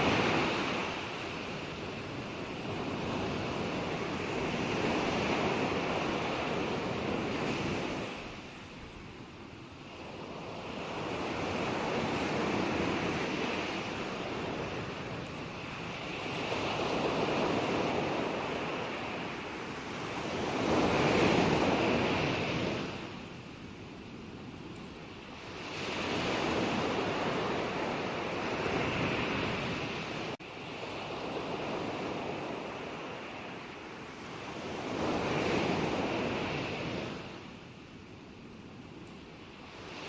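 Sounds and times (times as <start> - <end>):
ocean waves breaking on shore: 0.0 - 38.1, 39.2 - 40.0.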